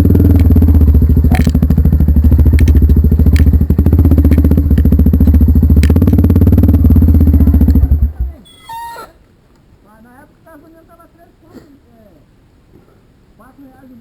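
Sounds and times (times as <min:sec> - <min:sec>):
motorcycle engine idling: 0:00.0 - 0:08.4.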